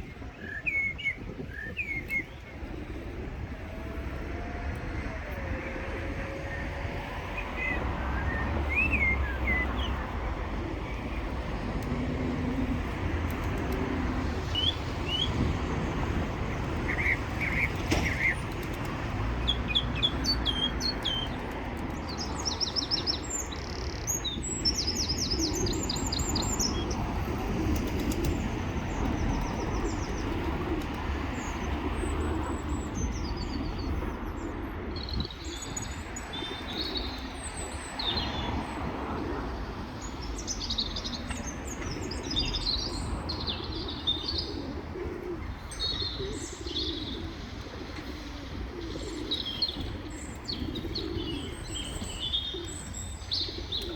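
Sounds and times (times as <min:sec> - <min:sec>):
pigeons cooing: 0:00.0 - 0:53.9
small birds chirping: 0:39.5 - 0:53.9.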